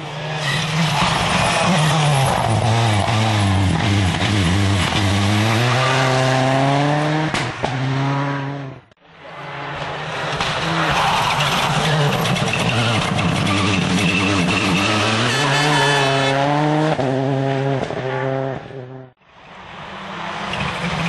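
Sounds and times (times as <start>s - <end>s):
rally car engine changing gear: 10.3s - 17.9s.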